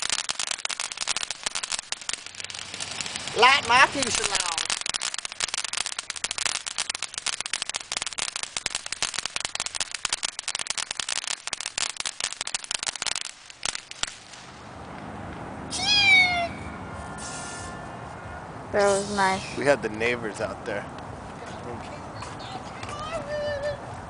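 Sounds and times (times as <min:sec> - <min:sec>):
firecrackers crackling: 0:00.0 - 0:16.5
short high falling call: 0:15.7 - 0:17.9.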